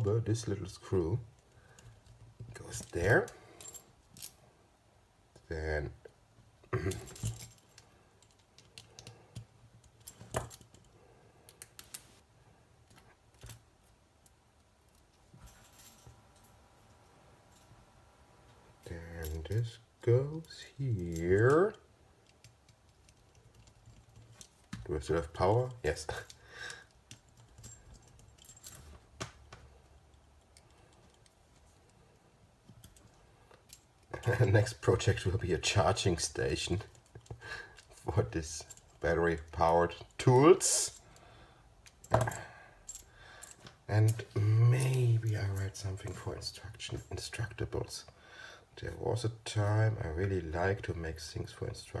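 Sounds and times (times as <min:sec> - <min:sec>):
low steady hum: 0:00.0 - 0:48.2
small parts clicking and rattling: 0:01.3 - 0:04.5, 0:06.7 - 0:12.2, 0:12.8 - 0:17.7, 0:18.8 - 0:46.2
small metal parts clinking: 0:06.8 - 0:12.0, 0:12.9 - 0:16.6, 0:25.3 - 0:29.0.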